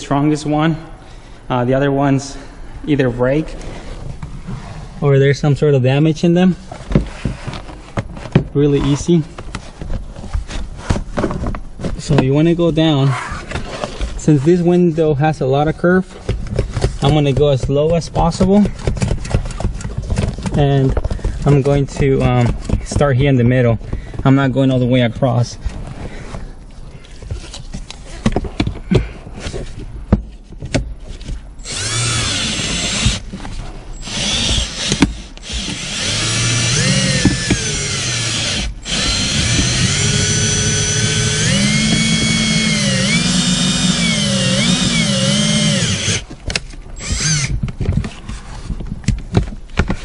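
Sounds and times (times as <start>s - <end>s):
power drill motor whining: 31.6s - 33.2s, 34.0s - 46.2s, 47.0s - 47.5s.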